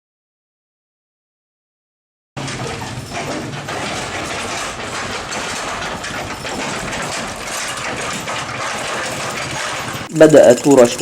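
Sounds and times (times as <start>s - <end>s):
heavy machinery engine clattering: 2.4s - 11.0s.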